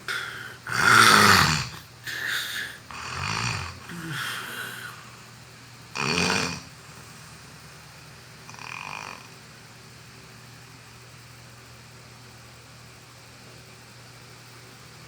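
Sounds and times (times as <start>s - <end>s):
person snoring: 0.0s - 5.3s, 6.0s - 6.7s, 8.5s - 9.3s
steady low hum: 0.0s - 8.6s.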